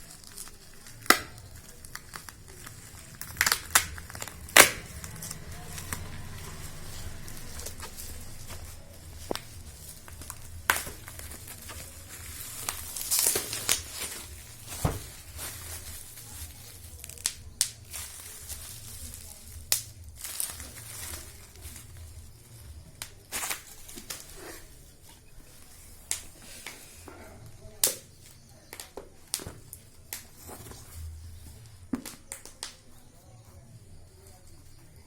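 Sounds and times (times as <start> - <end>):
low steady hum: 0.0 - 26.3
plastic and paper crinkling: 0.0 - 33.2.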